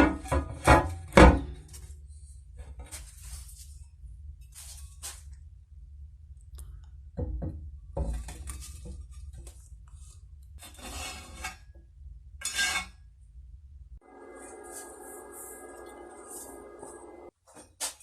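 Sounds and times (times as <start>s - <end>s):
scraping and rustling: 0.0s - 3.8s, 4.4s - 5.4s
low hum: 13.3s - 17.3s.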